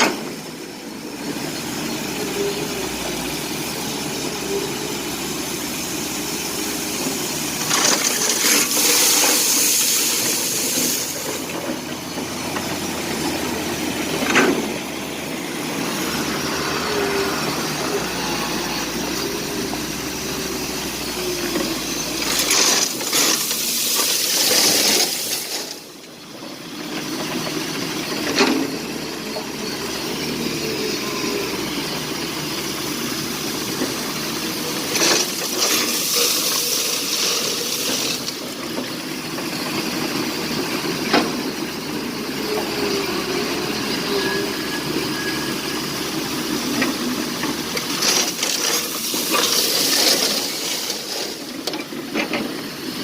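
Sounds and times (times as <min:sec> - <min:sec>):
excavator engine running: 0:00.0 - 0:53.0
stone pouring from bucket: 0:07.6 - 0:11.5.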